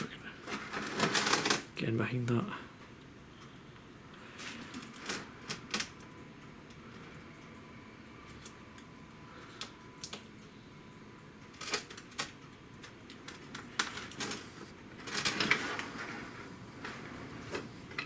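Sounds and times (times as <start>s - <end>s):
rattling and rustling: 0.0s - 1.7s, 11.6s - 18.0s.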